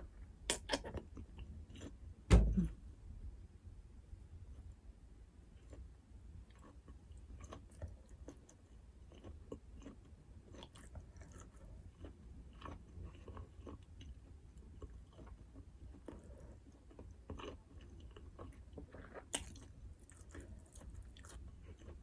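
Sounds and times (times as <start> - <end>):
low steady hum: 0.0 - 22.0
chewing and biting food: 5.6 - 22.0.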